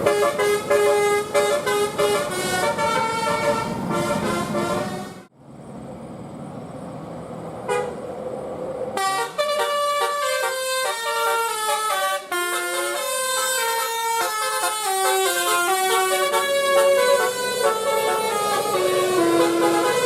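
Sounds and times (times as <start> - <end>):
musical air horn tune: 0.0 - 5.3, 9.0 - 20.0
vehicle noise: 0.0 - 20.0.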